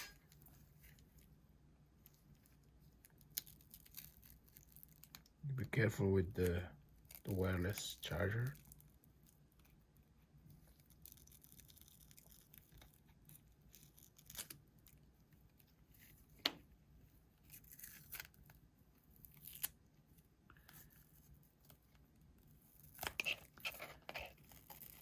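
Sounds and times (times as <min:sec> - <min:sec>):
adhesive tape tearing: 0:10.8 - 0:15.0, 0:17.5 - 0:18.6, 0:19.2 - 0:19.8, 0:22.7 - 0:25.0.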